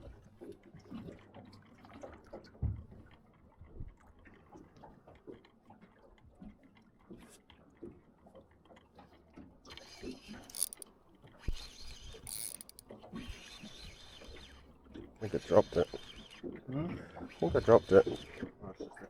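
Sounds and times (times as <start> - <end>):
fishing reel clicking: 9.8 - 14.6.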